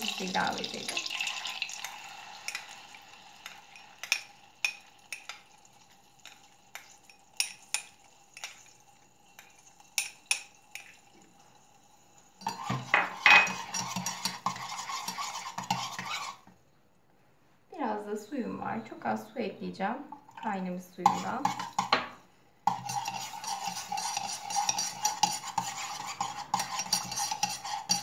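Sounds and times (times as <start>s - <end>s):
stirring and scraping in pan: 0.0s - 16.7s, 21.0s - 28.0s
metal spoon clinking on pan: 1.8s - 2.8s.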